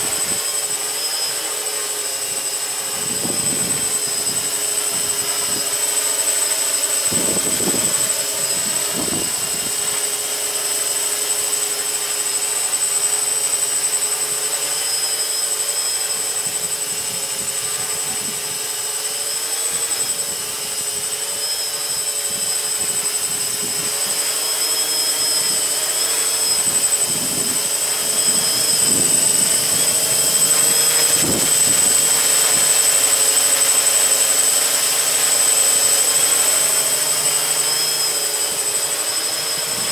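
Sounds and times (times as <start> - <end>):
drone propellers whirring: 0.0 - 39.9
wind buffeting microphone: 7.1 - 9.7, 26.6 - 32.1.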